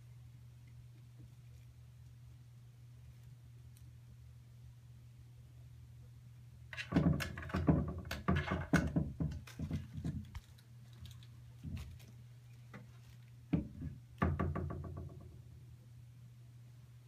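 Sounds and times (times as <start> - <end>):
low steady hum: 0.0 - 17.0
knocks and thumps: 6.8 - 10.4, 13.5 - 15.4.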